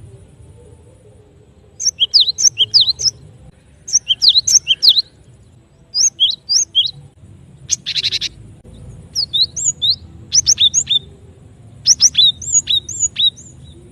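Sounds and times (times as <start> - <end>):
bird whistled calls: 1.8 - 3.2, 3.9 - 5.2, 5.9 - 7.0, 7.6 - 8.4, 9.1 - 11.1, 11.8 - 13.9.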